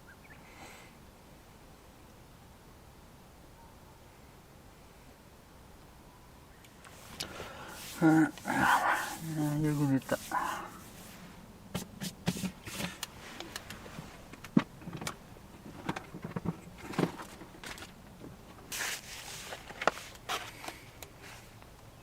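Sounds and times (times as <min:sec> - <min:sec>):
short rustle: 0:06.8 - 0:14.4, 0:18.7 - 0:21.6.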